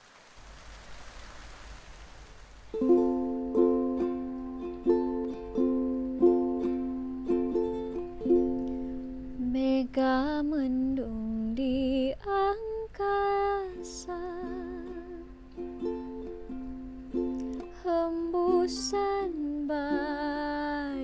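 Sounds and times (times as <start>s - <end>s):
ukulele plucking chords: 2.7s - 10.9s, 13.0s - 21.0s.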